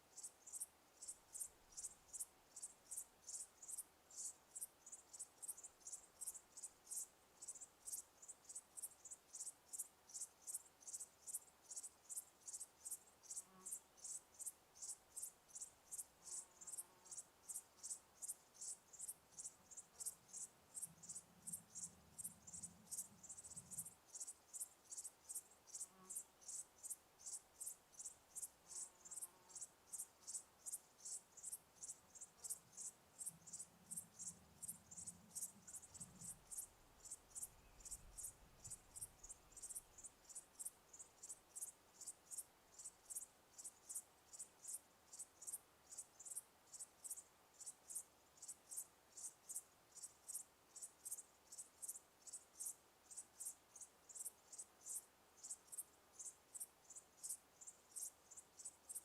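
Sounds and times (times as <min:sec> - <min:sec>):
cricket chirping: 0:00.0 - 0:59.0
faint low hum: 0:18.8 - 0:26.5, 0:29.7 - 0:41.5.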